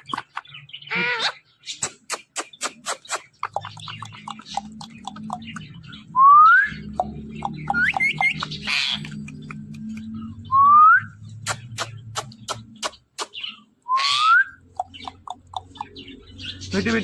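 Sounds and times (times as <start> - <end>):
parrot squawk: 0.0 - 4.7, 7.7 - 9.3, 11.4 - 16.0
parrot chirps: 0.0 - 5.8, 6.7 - 16.6
parrot clicking: 1.8 - 5.8, 7.0 - 10.1, 11.4 - 13.4, 14.6 - 16.1.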